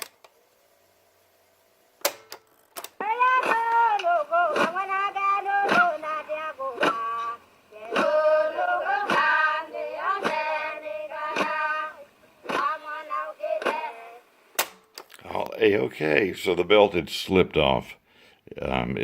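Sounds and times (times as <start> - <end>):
recorded singing with steady beat: 3.0 - 14.4.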